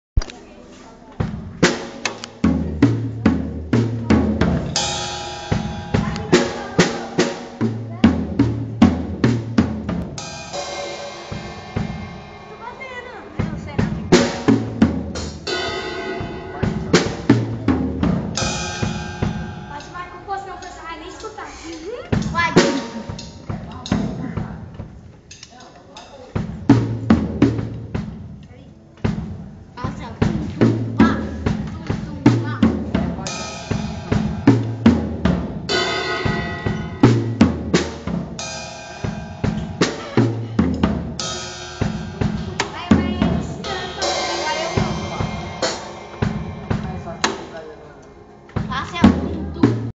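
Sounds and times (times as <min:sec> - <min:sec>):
snare and tom hits: 0:01.2 - 0:20.0, 0:30.2 - 0:47.7
cymbals ringing: 0:03.8 - 0:24.5, 0:32.4 - 0:49.8
cymbal crash: 0:04.4 - 0:24.2, 0:33.0 - 0:49.3.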